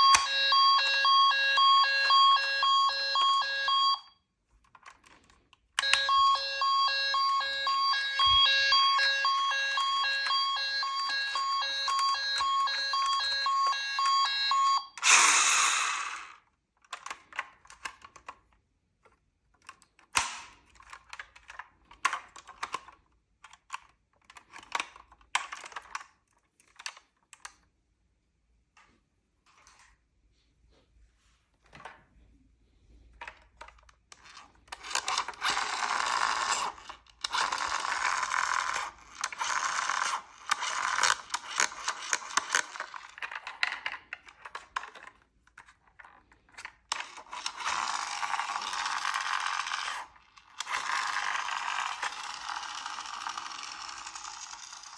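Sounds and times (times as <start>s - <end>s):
toy siren beeping tones: 0.0s - 4.1s, 5.8s - 16.3s
toy cars clicking and rattling: 15.0s - 18.5s, 33.2s - 54.9s.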